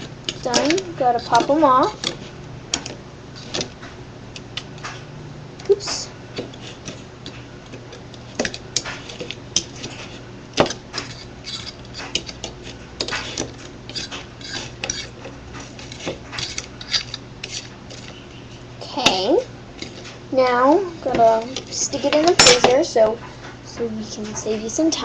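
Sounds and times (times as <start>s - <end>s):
fork scraping baking tray: 0.3s - 2.4s, 5.7s - 18.2s, 19.8s - 23.1s.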